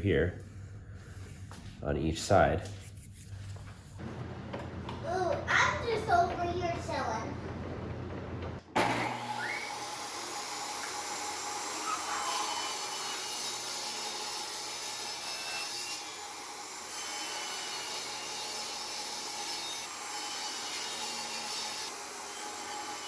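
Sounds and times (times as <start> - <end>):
saw blade rasping wood: 8.8 - 16.1
table saw whine: 8.8 - 23.0.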